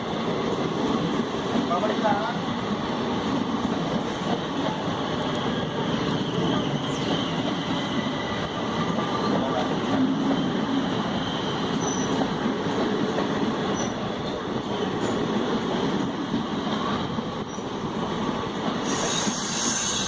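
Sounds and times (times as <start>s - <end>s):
train rumbling on rails: 0.0s - 20.0s
high wheel squeals: 18.8s - 20.0s.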